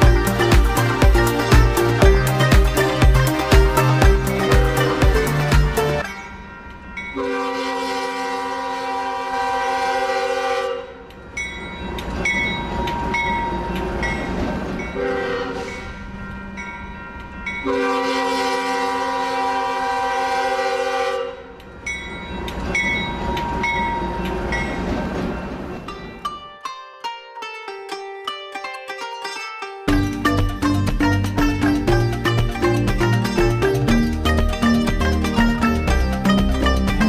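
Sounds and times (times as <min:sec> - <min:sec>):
toy train horn blasts: 0:04.2 - 0:05.4, 0:07.2 - 0:11.1, 0:15.0 - 0:15.9, 0:17.6 - 0:21.6
toy train rumbling and clattering: 0:29.9 - 0:37.0.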